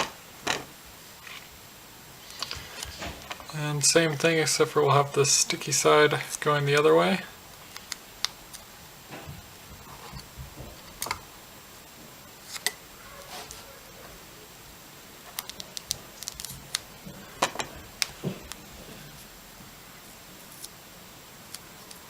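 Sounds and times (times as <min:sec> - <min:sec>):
electrical tape clicks and crinkles: 0:05.0 - 0:11.2, 0:15.2 - 0:19.3, 0:20.4 - 0:22.0.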